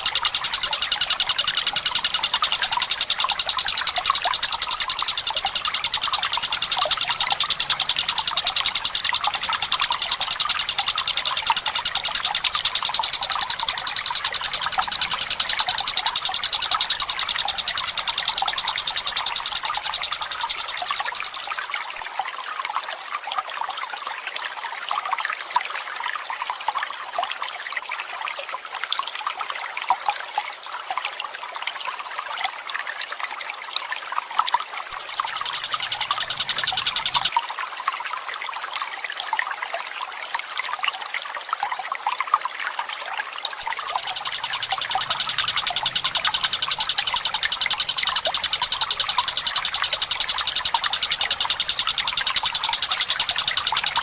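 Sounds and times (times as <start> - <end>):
bird high rolling trill: 0.0 - 21.4, 35.0 - 37.3, 43.7 - 54.0
water trickling: 0.0 - 54.0.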